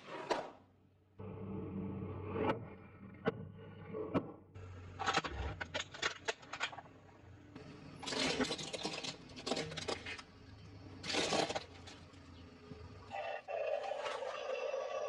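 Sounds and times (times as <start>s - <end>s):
crunching and chewing: 8.0s - 10.4s, 11.0s - 12.2s.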